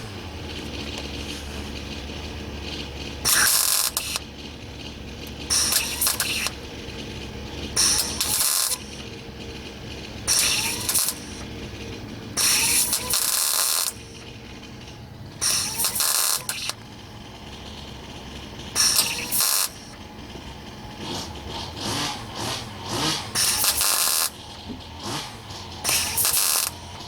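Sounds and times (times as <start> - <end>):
mig welder bursts: 0.0 - 27.0.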